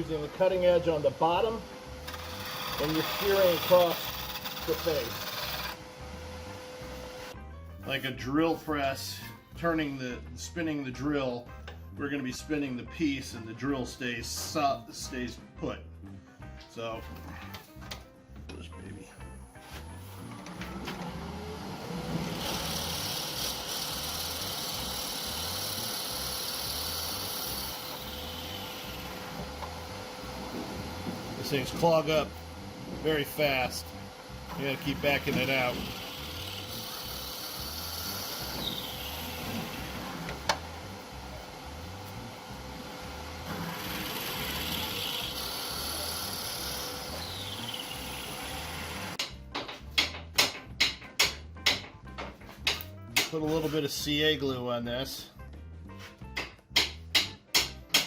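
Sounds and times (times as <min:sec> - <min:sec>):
wood lathe motor whine: 0:00.0 - 0:07.4, 0:20.0 - 0:49.2
drill bit cutting wood hiss: 0:02.0 - 0:05.8, 0:22.2 - 0:30.3, 0:34.6 - 0:40.5, 0:43.5 - 0:49.2.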